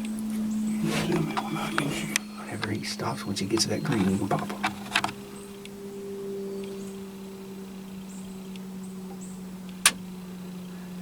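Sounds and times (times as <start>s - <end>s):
faint high chirps: 0.0s - 4.6s
steady low hum: 0.0s - 11.0s.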